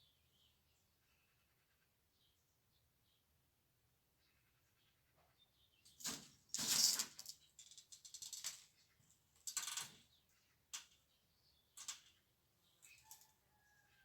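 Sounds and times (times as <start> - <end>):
objects clattering and rattling: 6.0 - 8.8.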